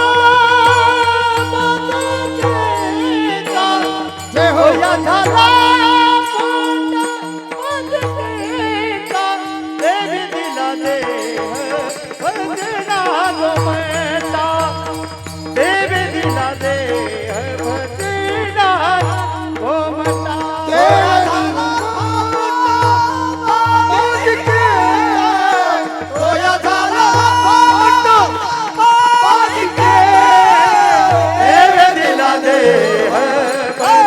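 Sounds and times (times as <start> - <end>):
person singing ornamented phrases: 0.0 - 14.9, 15.6 - 34.0.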